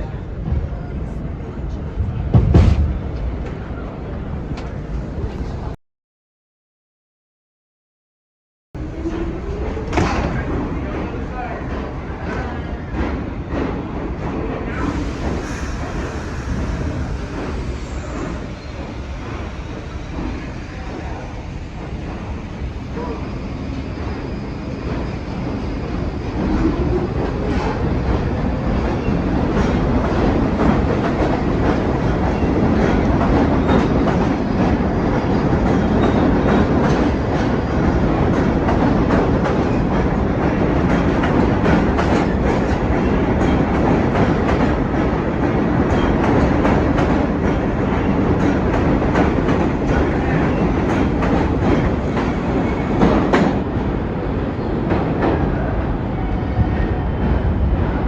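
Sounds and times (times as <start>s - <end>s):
subway train rumble: 0.0s - 5.8s, 8.8s - 58.0s.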